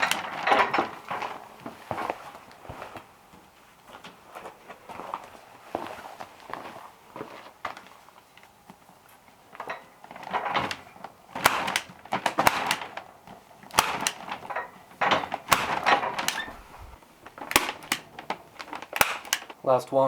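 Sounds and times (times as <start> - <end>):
stapler clacking: 0.0 - 0.4, 11.4 - 19.6
paper rustling: 10.2 - 19.6.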